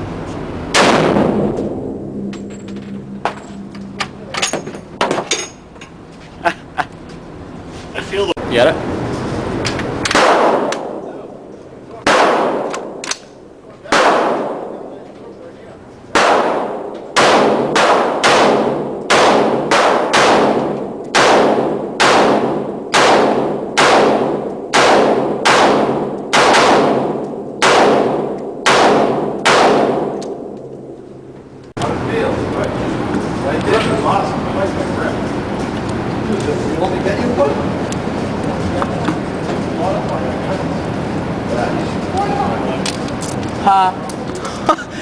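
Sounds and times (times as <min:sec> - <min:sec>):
gunshots with echo: 0:00.7 - 0:03.5, 0:10.1 - 0:11.2, 0:12.0 - 0:13.2, 0:13.9 - 0:15.0, 0:16.1 - 0:30.6.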